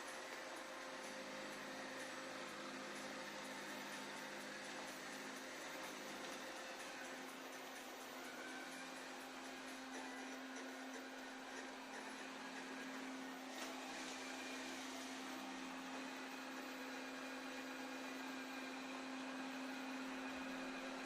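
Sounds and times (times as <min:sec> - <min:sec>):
robot vacuum cleaner running: 0:00.0 - 0:21.0.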